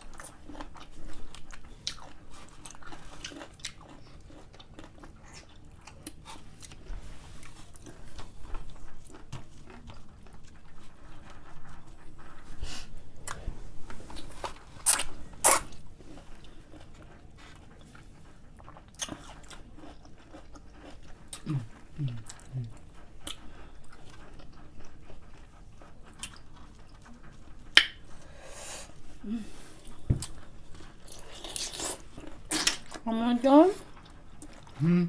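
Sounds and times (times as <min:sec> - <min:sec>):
wet chewing: 0:00.0 - 0:35.0.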